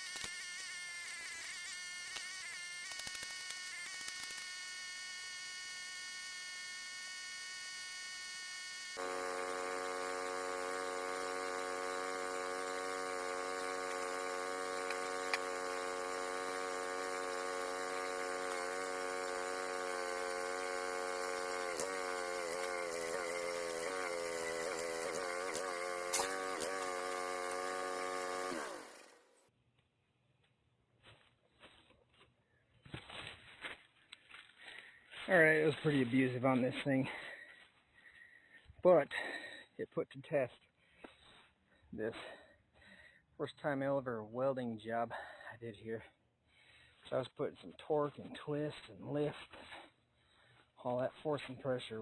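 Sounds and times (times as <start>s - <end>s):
small engine running: 0.0s - 29.5s.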